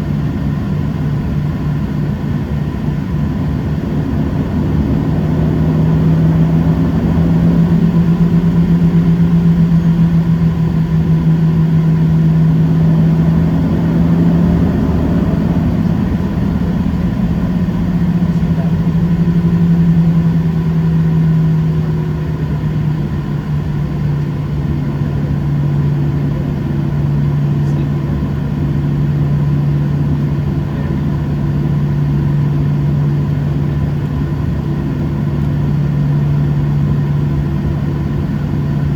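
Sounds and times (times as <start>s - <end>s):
low steady engine hum: 0.0s - 38.9s
rush of cabin noise: 1.5s - 38.9s.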